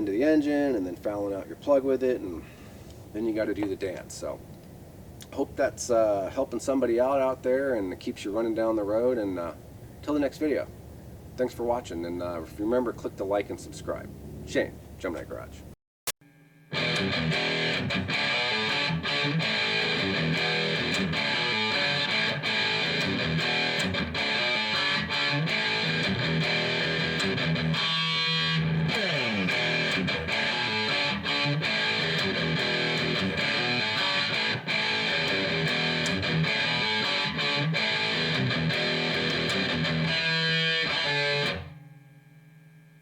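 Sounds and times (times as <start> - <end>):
distorted electric guitar music: 16.2 - 43.0.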